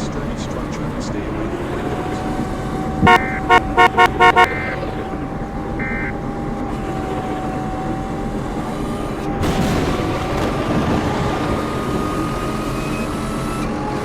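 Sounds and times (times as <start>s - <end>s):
road noise: 0.0s - 14.0s
vehicle horn short toots: 3.0s - 4.8s.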